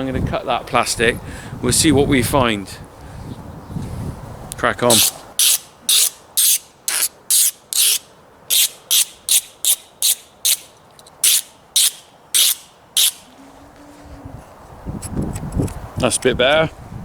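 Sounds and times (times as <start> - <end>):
knife blade sharpening strokes: 4.9 - 13.4.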